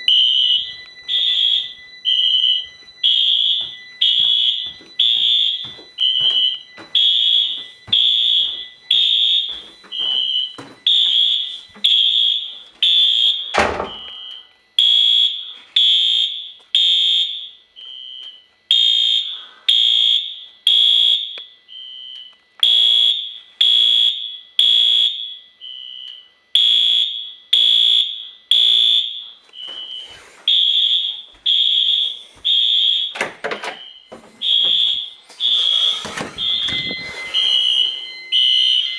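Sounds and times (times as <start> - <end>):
fire alarm horn blasts: 0.0 - 38.9
short lower beep: 33.8 - 38.9.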